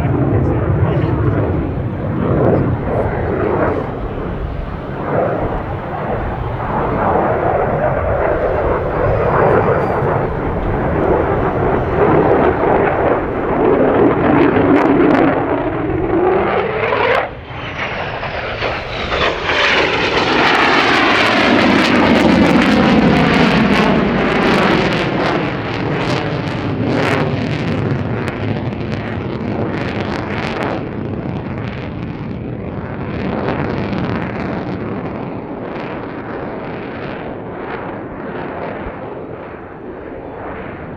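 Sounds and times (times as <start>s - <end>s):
jet engine roaring past: 0.0s - 27.6s.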